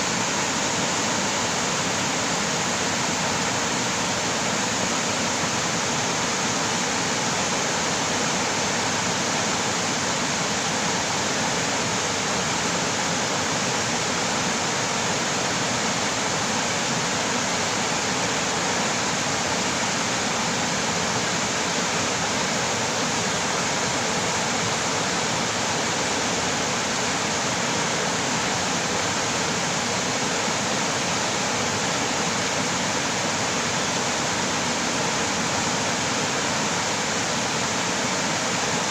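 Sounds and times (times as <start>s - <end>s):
stream rushing over rocks: 0.0s - 38.9s.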